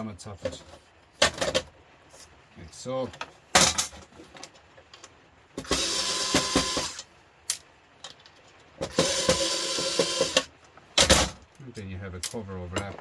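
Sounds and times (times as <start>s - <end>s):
small electric motor whirring: 5.6s - 7.0s, 8.9s - 10.5s.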